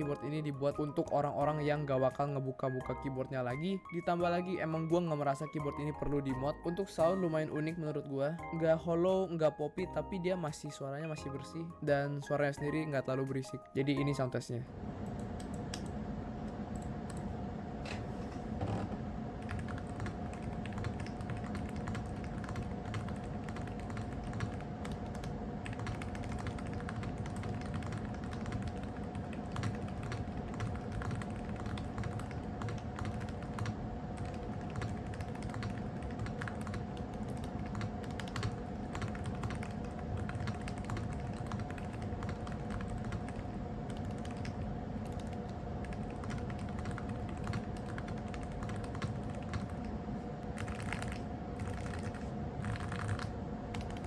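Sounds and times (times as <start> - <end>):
keyboard typing clicks: 15.0 - 17.3, 19.4 - 54.0.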